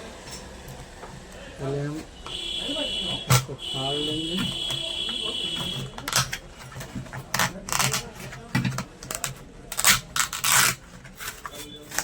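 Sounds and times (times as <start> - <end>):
paper speaker cone tearing: 7.2 - 12.0.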